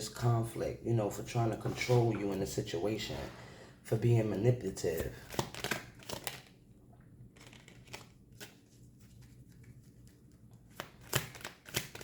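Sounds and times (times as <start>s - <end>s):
cards clicking and rustling: 5.0s - 6.6s, 7.3s - 12.0s.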